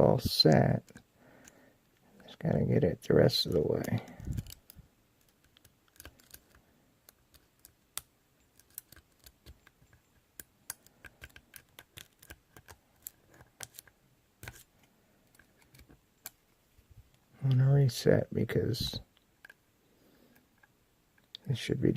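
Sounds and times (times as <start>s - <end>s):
lock pick clicking in padlock: 4.2s - 6.4s.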